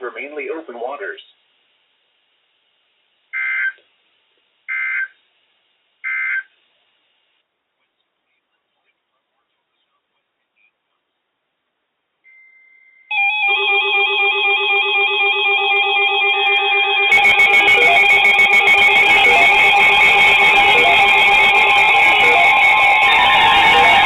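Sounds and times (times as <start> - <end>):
warbling electronic tones: 17.0 - 24.0.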